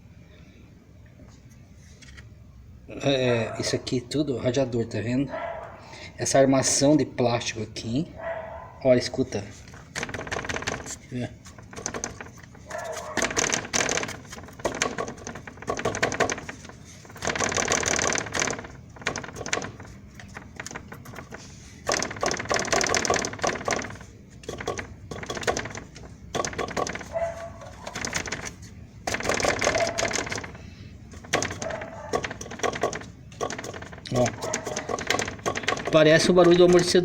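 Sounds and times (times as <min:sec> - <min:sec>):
plastic frame rattling and knocking: 0:09.6 - 0:37.0.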